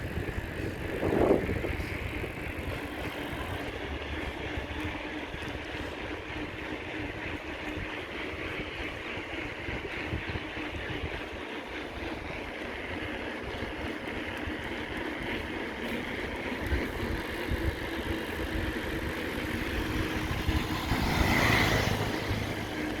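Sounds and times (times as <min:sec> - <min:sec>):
wind on microphone: 0:00.0 - 0:05.9
road vehicle noise: 0:00.0 - 0:23.0
vehicle passing close: 0:19.0 - 0:23.0.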